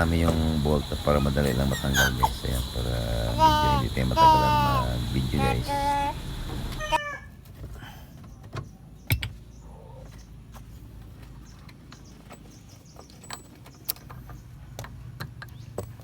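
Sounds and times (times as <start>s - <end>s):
low steady hum: 0.0s - 7.0s.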